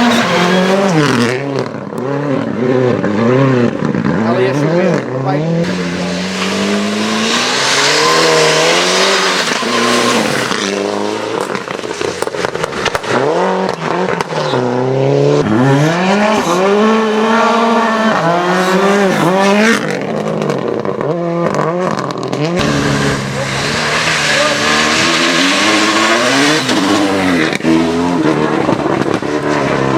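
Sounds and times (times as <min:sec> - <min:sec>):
rally car engine at full throttle: 0:00.0 - 0:29.9
exhaust pops and crackles: 0:05.6 - 0:16.9, 0:18.1 - 0:29.8.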